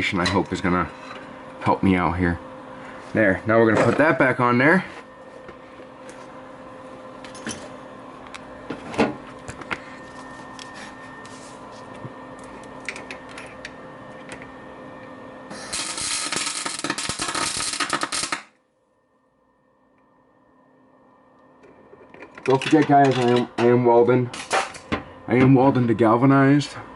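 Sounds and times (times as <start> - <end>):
steady electrical hum: 0.0 - 26.9
welder arc crackling: 15.5 - 18.5.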